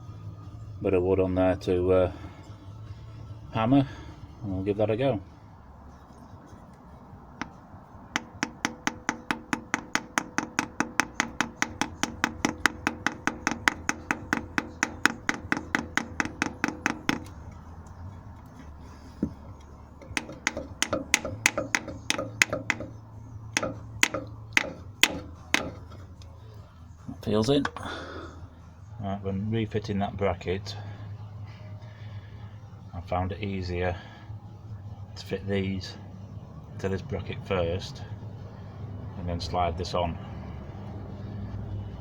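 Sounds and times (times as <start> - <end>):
hammer tapping wood block: 7.4 - 7.6, 8.2 - 17.5, 20.0 - 26.0.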